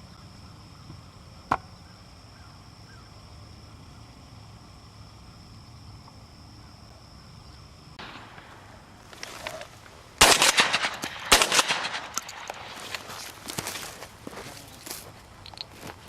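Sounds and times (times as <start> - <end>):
shotgun shots: 8.0 - 9.0, 10.2 - 13.2
rustling: 8.3 - 11.2, 11.8 - 16.0
scattered clicks: 9.4 - 13.0.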